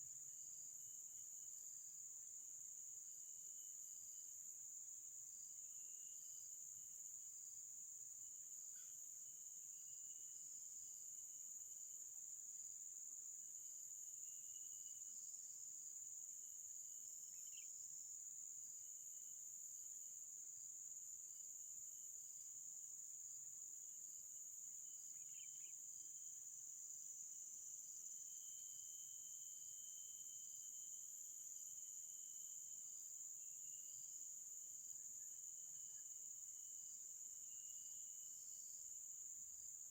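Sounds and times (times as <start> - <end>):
insects chirring: 13.7 - 16.1, 17.2 - 17.8, 24.4 - 39.9.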